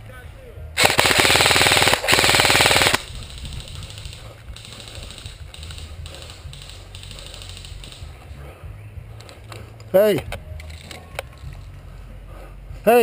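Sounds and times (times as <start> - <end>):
airsoft gun full auto bursts: 0.8 - 8.0.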